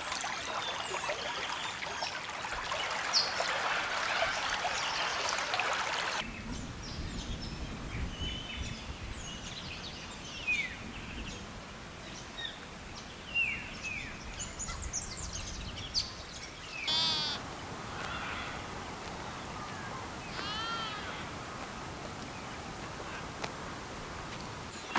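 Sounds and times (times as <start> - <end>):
trickling water: 0.0 - 6.2
small birds chirping: 12.1 - 23.6
sheep bleating: 16.9 - 17.4, 20.3 - 21.2.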